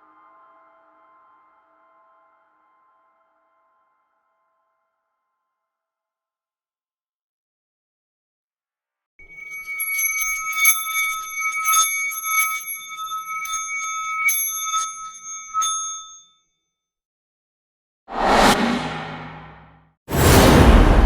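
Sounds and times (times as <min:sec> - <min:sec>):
small metal bell ringing: 0:09.2 - 0:16.5
sudden rushing noise: 0:18.1 - 0:21.0.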